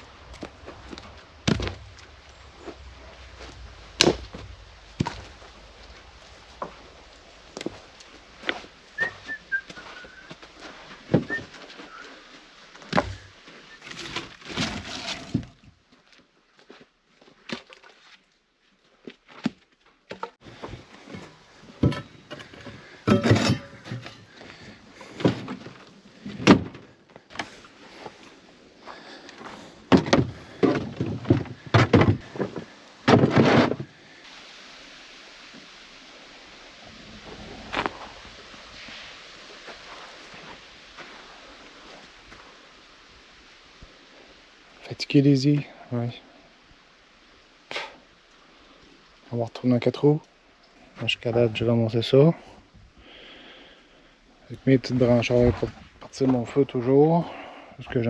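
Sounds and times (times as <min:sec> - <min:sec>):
firewood knocking: 0:00.2 - 0:07.0, 0:29.9 - 0:33.7
wood scraping clatter: 0:12.8 - 0:15.7, 0:20.1 - 0:28.2, 0:29.4 - 0:34.0.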